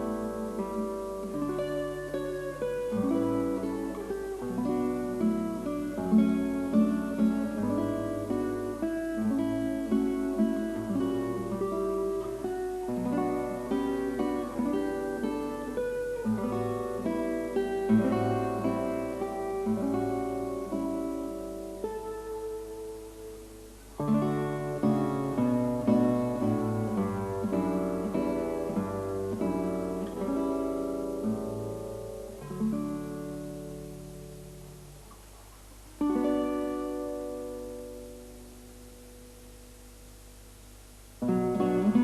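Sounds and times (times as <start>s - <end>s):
acoustic guitar melody: 0.0s - 42.0s.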